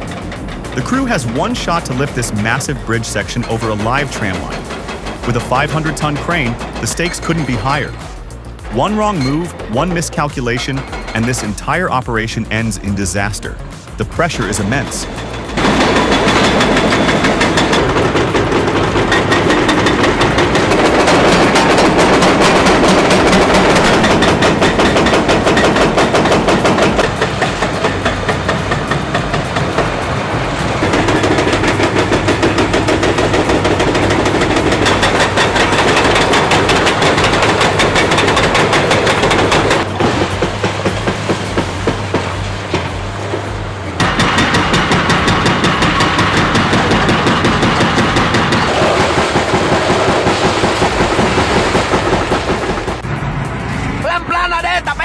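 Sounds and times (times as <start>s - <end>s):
diesel engine rattling: 0.0s - 55.0s.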